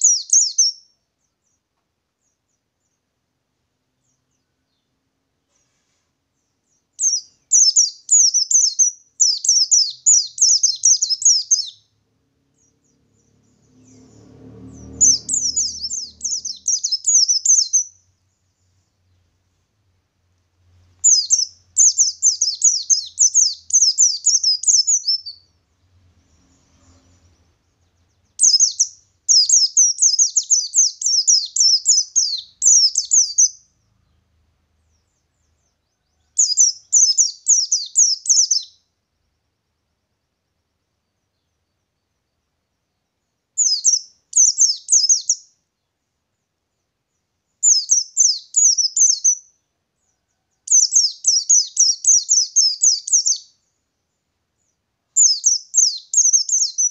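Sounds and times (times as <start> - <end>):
bird twittering song: 0.0 - 3.2, 3.9 - 19.4, 20.6 - 39.6, 40.2 - 56.9
soft low rumble: 12.1 - 16.9.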